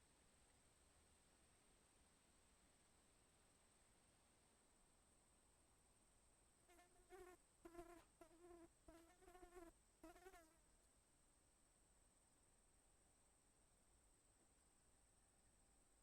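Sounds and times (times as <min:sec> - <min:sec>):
faint insect buzzing: 0:06.6 - 0:10.7
thin high-pitched hiss: 0:06.7 - 0:10.6.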